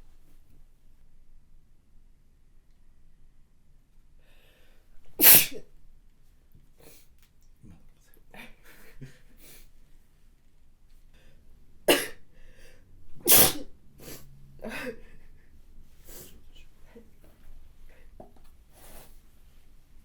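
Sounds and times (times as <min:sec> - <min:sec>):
soft breathing: 0:04.2 - 0:05.0, 0:12.3 - 0:13.0, 0:14.0 - 0:19.9
woman sneezing: 0:05.2 - 0:05.6, 0:11.9 - 0:12.2, 0:13.3 - 0:15.0.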